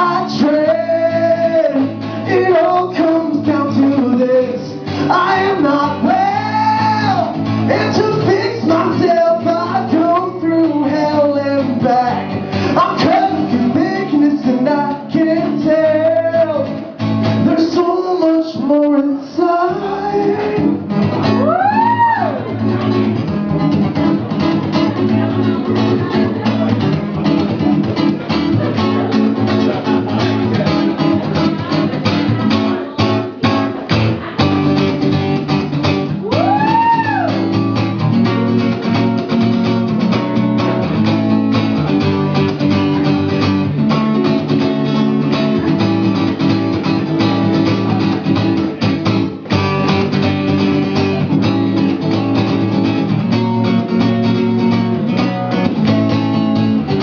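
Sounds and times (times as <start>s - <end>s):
acoustic guitar strumming: 0.0s - 57.0s.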